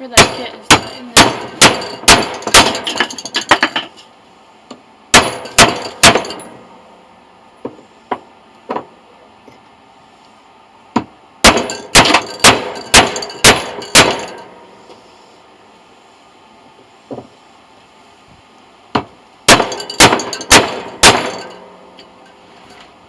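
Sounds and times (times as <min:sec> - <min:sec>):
hammer blows on metal: 0:19.5 - 0:22.2.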